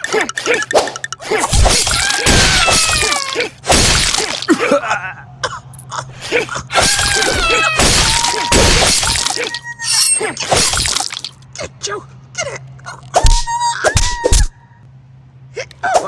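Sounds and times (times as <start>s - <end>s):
crashes and hits: 1.5s - 4.5s.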